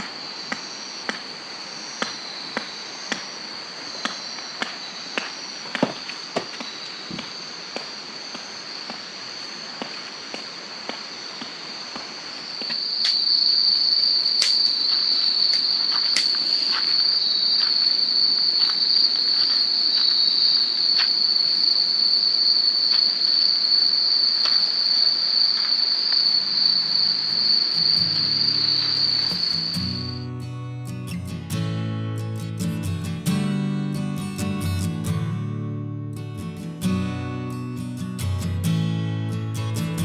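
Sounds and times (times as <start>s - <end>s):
crickets trilling: 0.0s - 40.0s
music: 26.9s - 40.0s.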